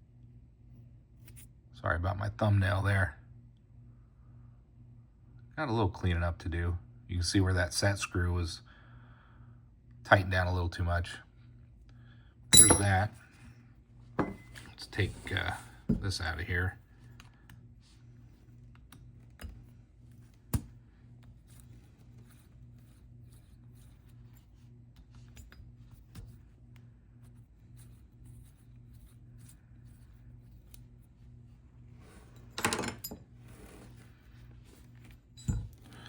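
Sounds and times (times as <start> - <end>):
steady low hum: 0.0 - 36.0
handling noise: 12.6 - 13.1, 14.2 - 16.1.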